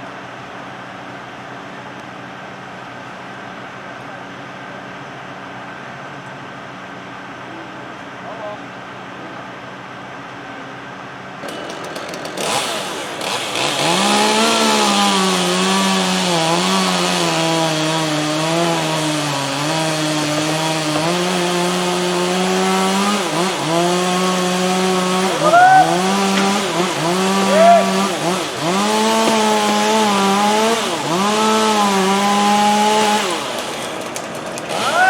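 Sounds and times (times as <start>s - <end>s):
chainsaw cutting wood: 11.4s - 35.0s.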